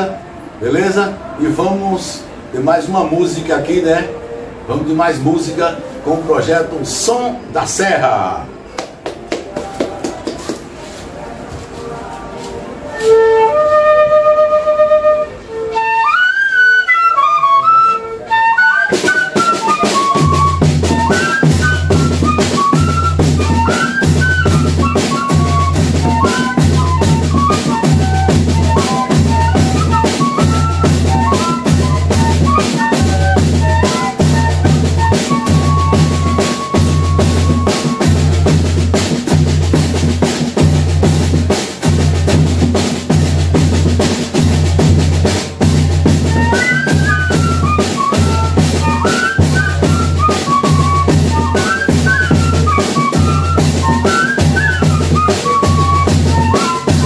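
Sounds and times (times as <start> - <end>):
fife melody: 10.8 - 57.0
snare drum: 18.8 - 57.0
bass drum beat: 20.2 - 46.6.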